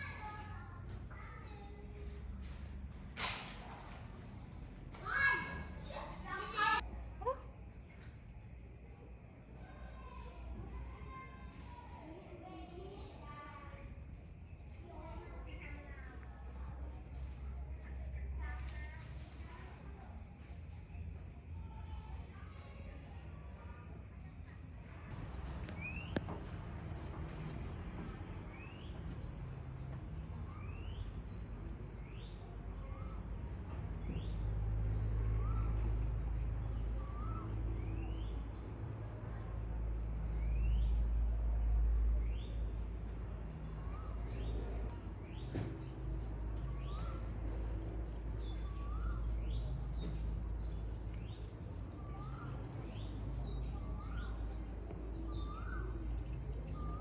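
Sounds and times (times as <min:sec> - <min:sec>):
bird calling: 0:51.2 - 0:57.0.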